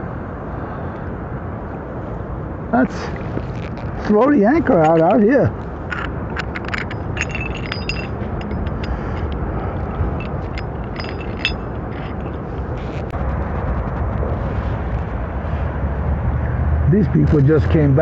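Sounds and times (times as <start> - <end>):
wind: 0.0 - 18.0
anchor chain clinking and rattling: 3.2 - 13.2.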